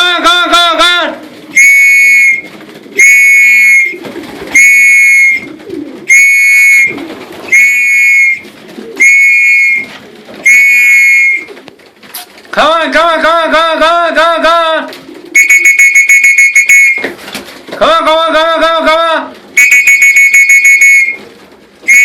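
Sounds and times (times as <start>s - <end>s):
whistle blasts: 1.6s - 4.0s, 4.6s - 5.5s, 6.1s - 8.4s, 9.0s - 9.9s, 10.5s - 11.5s, 15.4s - 17.1s, 19.6s - 21.2s.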